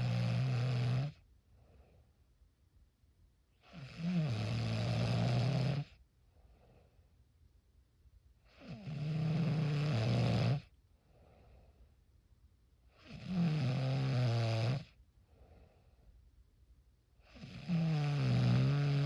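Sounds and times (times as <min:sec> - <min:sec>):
person snoring: 0:00.0 - 0:01.2, 0:03.6 - 0:05.9, 0:08.5 - 0:10.7, 0:13.0 - 0:14.9, 0:17.3 - 0:19.0
faint breathing: 0:01.5 - 0:02.3, 0:06.2 - 0:07.2, 0:10.9 - 0:12.0, 0:15.2 - 0:16.3.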